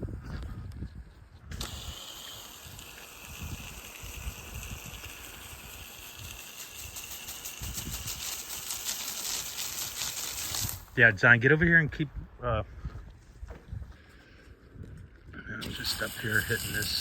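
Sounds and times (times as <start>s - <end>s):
spray nozzle hissing: 1.5s - 11.0s, 15.6s - 17.0s.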